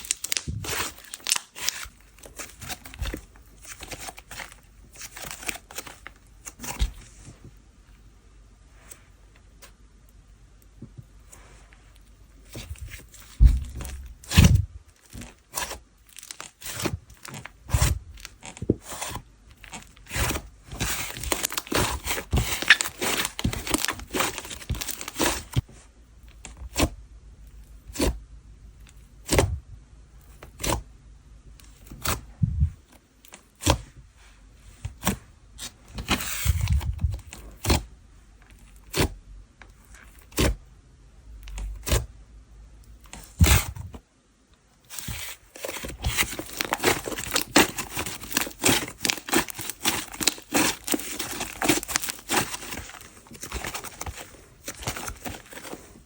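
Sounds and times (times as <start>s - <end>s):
slime crackling: 19.6s - 25.6s, 46.1s - 55.7s.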